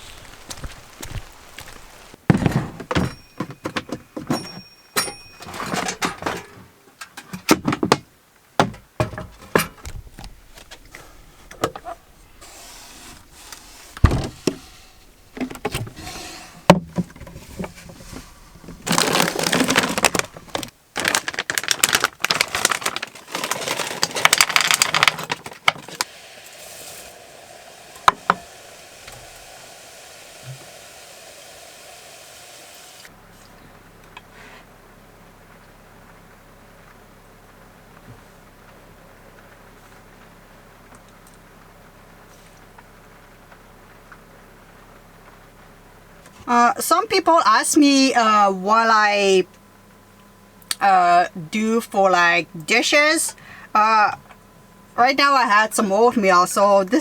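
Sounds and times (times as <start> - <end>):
rustling hissing noise: 0.0 - 2.3, 9.8 - 20.6.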